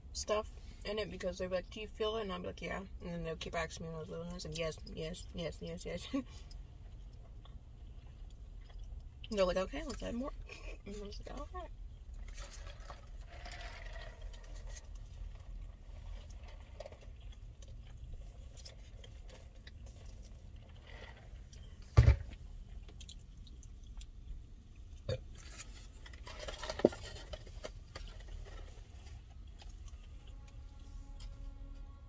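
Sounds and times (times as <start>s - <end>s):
person chewing food: 6.7s - 9.3s, 12.1s - 30.8s.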